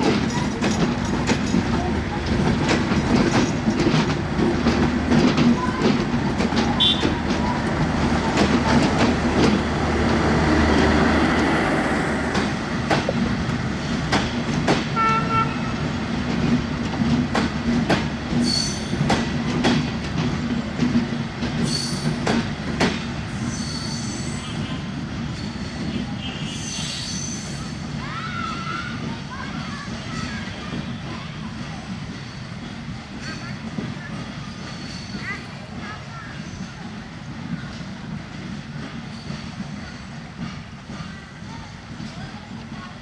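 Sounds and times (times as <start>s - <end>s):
wheels clicking over rail joints: 0.0s - 26.1s
train rumbling on rails: 0.0s - 43.0s
high wheel squeals: 23.3s - 28.7s.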